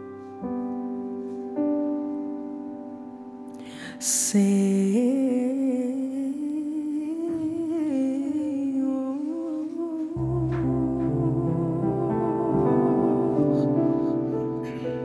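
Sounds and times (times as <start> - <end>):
piano chord: 0.0 - 5.0, 10.1 - 15.0
person humming a melody: 3.6 - 15.0.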